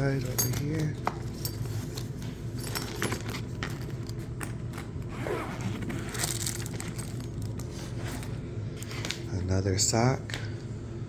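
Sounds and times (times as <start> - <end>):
steady low hum: 0.0 - 11.0
items clicking in a tool bag: 0.2 - 9.2
fabric bag rustling: 5.1 - 8.3.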